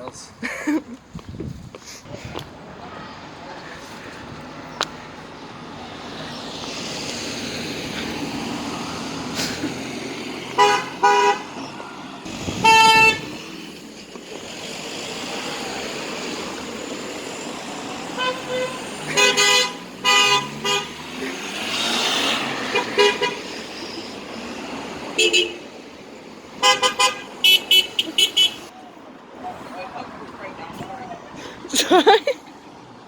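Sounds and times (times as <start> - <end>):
passing road traffic: 0.0 - 33.0
car horns honking: 10.4 - 13.6, 18.0 - 24.1, 25.0 - 25.8, 26.6 - 28.7.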